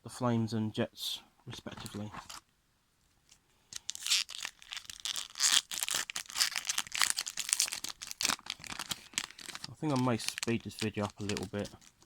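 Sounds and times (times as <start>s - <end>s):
wrapper crinkling and tearing: 3.8s - 12.0s.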